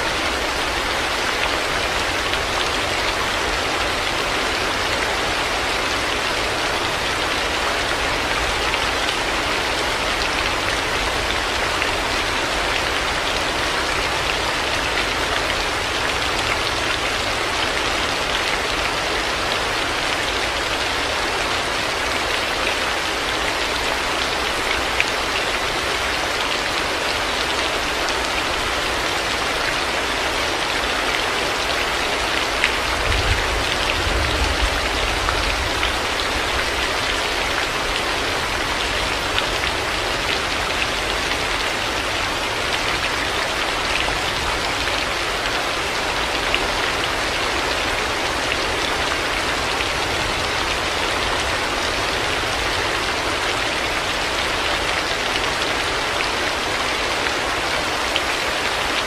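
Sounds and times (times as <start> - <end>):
heavy rain: 0.0 - 59.0.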